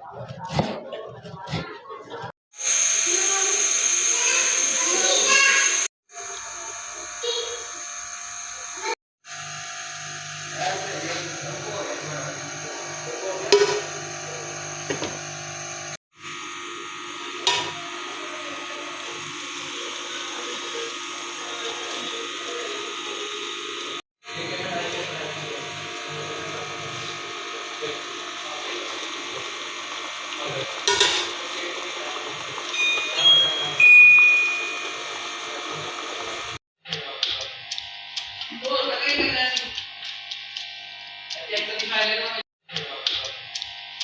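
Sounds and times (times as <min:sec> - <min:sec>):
small electric motor humming: 0:02.6 - 0:36.6
high bell-like notes: 0:32.7 - 0:35.0.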